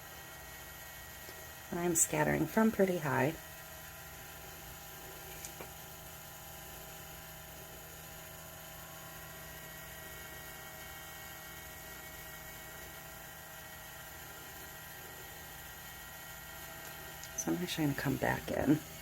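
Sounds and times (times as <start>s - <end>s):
small electric motor whirring: 3.5s - 17.5s.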